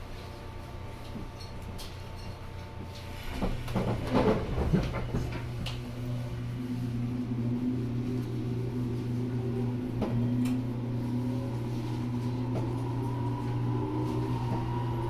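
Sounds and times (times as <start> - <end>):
electric train hum with whining: 2.5 - 15.0.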